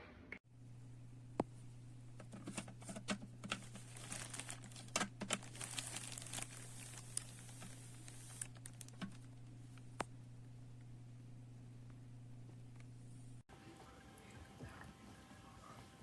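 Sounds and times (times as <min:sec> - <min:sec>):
steady low hum: 0:00.0 - 0:16.0
crinkling and clicking handling: 0:02.2 - 0:10.1.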